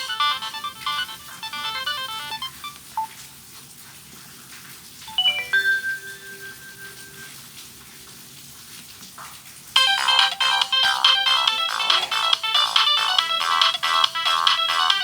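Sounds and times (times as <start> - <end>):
phone ringtone melody: 0.0 - 3.2, 5.1 - 7.4, 9.8 - 15.0.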